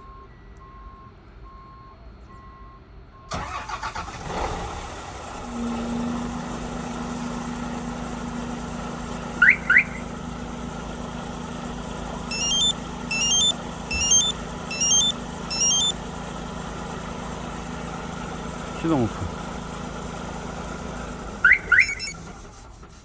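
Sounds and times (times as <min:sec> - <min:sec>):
diesel engine starting and idling: 0:00.0 - 0:23.0
short alarm beeps: 0:09.4 - 0:10.1, 0:12.3 - 0:16.0, 0:21.4 - 0:22.2
short rising chirps: 0:09.4 - 0:10.1, 0:12.3 - 0:16.0, 0:21.4 - 0:22.2.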